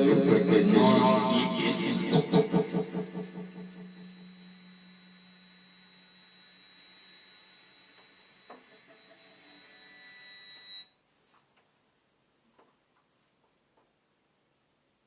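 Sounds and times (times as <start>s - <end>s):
low hum: 0.0s - 5.3s
high-pitched electronic tone: 0.0s - 5.9s.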